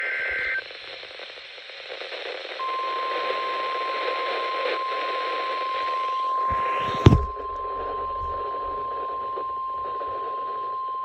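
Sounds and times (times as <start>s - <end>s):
static hiss: 0.0s - 2.6s.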